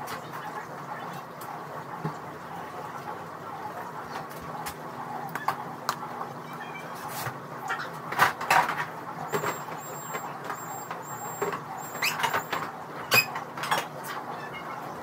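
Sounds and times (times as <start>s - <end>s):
refrigerator hum: 0.0s - 15.0s
containers knocking and clattering: 8.2s - 13.9s
high beeping tone: 9.3s - 12.5s.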